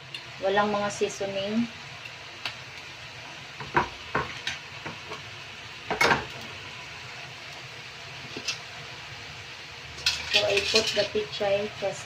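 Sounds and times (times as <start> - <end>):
vegetables sizzling in a pan: 0.0 - 12.0
utensil scraping against pan: 10.0 - 11.3.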